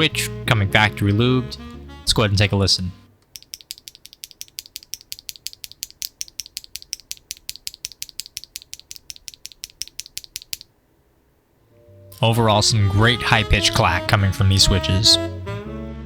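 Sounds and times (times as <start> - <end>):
mechanical keyboard switch clacks: 3.2 - 10.7.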